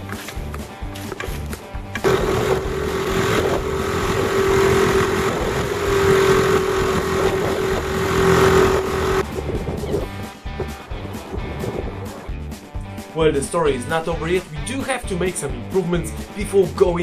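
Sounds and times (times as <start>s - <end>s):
small outboard motor running: 2.0s - 9.2s.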